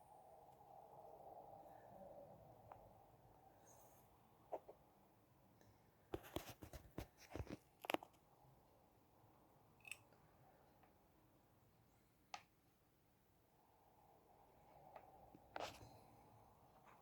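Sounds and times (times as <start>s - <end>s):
handling clicks and rustles: 6.2s - 8.2s.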